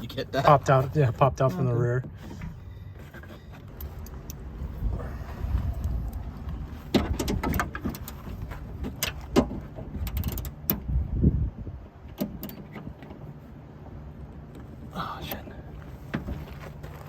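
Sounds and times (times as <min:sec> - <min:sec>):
dull low thumps: 0:03.6 - 0:10.2, 0:10.8 - 0:12.0
tools clicking inside car door: 0:06.9 - 0:10.9, 0:12.1 - 0:13.2.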